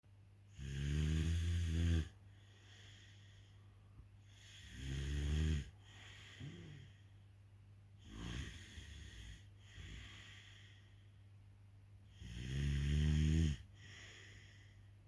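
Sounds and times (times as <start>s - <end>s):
loud snoring: 0.5s - 2.2s, 4.4s - 6.9s, 8.0s - 10.4s, 12.1s - 14.2s
quiet breathing: 0.5s - 15.0s.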